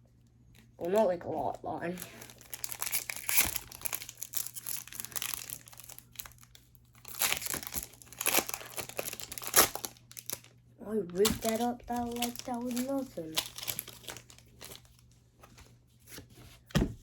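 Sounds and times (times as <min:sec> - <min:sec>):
foil wrapper crinkling: 0:00.6 - 0:15.7
foil wrapper ripping: 0:02.0 - 0:10.5, 0:11.2 - 0:15.0.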